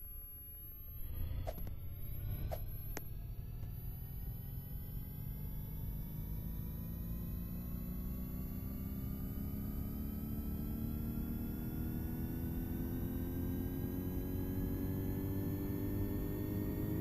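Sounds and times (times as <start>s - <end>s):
air conditioner whine rising: 0.0s - 17.0s.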